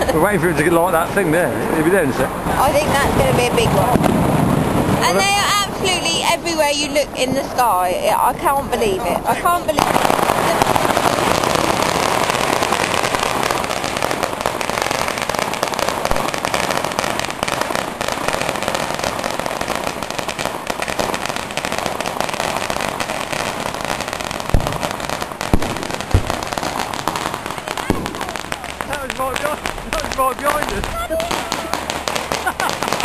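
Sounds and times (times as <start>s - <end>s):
firecrackers crackling: 0.0s - 33.0s
loud firecracker bangs: 2.4s - 6.4s, 9.3s - 33.0s.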